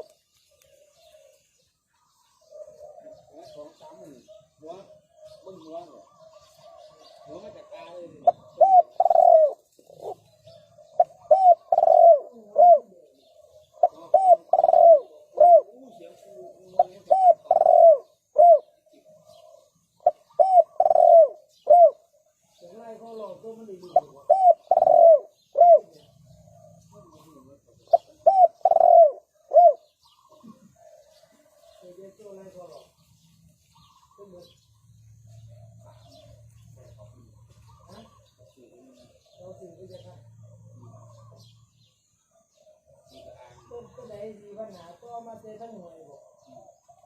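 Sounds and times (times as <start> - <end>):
dove cooing: 0.0 - 32.0, 33.7 - 47.0.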